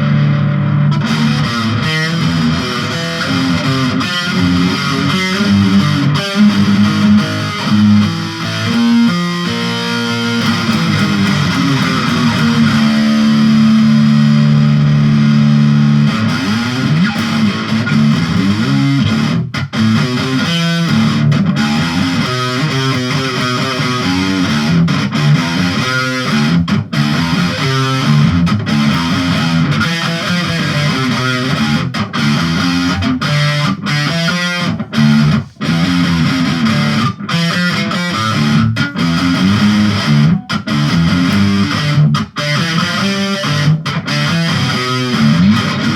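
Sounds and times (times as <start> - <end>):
distorted electric guitar riffs: 0.0 - 45.9.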